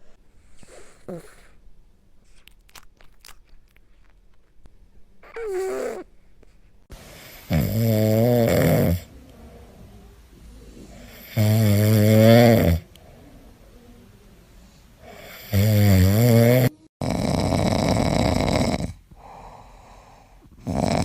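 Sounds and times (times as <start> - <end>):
cat snoring: 0.4 - 1.6, 7.2 - 21.0.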